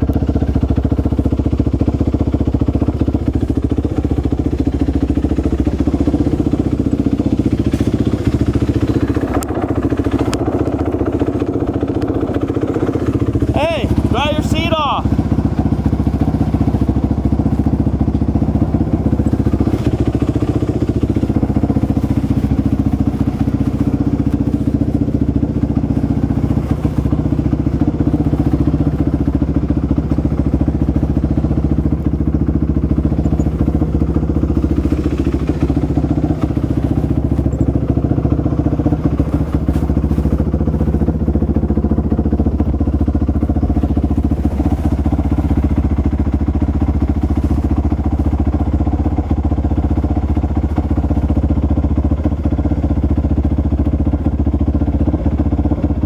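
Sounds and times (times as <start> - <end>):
motorcycle engine idling: 0.0 - 56.0.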